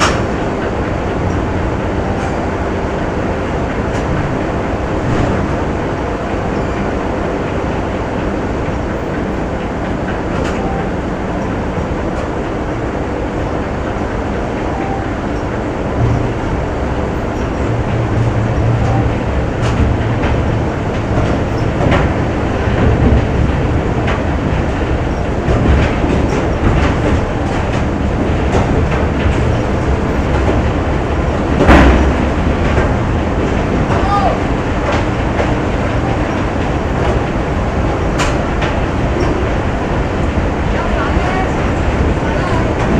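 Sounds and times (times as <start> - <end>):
machinery rumble: 0.0 - 42.9
machinery knocks: 15.9 - 39.6.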